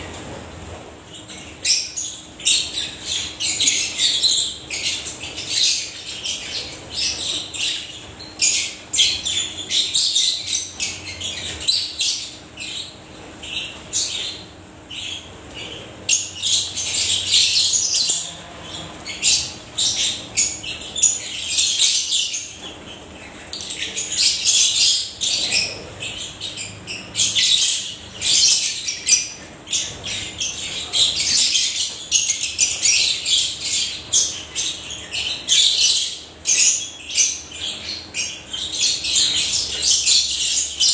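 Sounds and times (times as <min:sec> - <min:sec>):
lovebirds chirping and squawking: 0:00.0 - 0:40.9.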